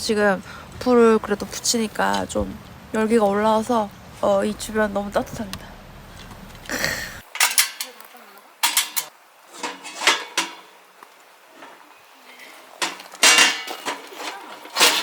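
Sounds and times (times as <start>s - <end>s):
metal cookware clattering: 8.6s - 10.7s, 12.8s - 15.0s.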